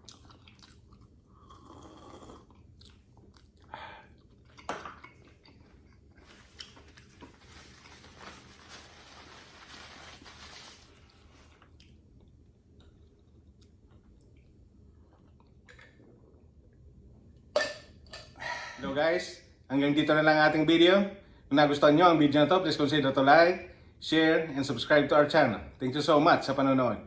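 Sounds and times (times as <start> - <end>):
person chewing and crunching food: 0.0 - 8.6, 10.9 - 16.6.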